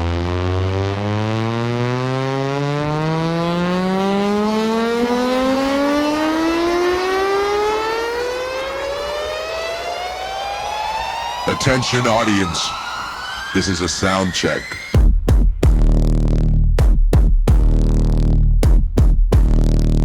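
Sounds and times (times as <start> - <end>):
synthesized siren tone rising: 0.0 - 15.0.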